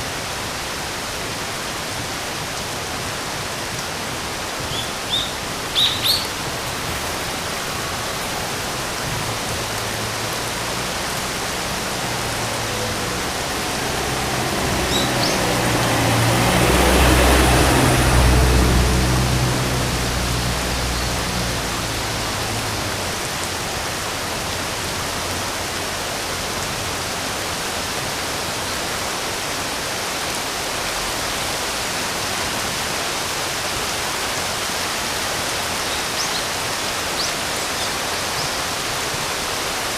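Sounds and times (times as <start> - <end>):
steady rain hiss: 0.0 - 39.9
bird chirps: 4.7 - 6.4, 14.8 - 15.5.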